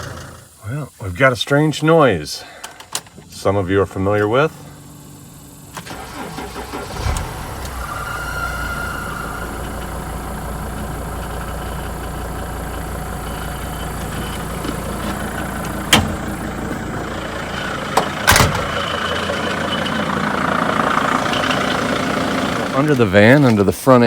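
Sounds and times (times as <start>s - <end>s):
van engine idling: 0.0s - 24.0s
sharp engine knocks: 13.9s - 16.9s, 17.9s - 19.0s.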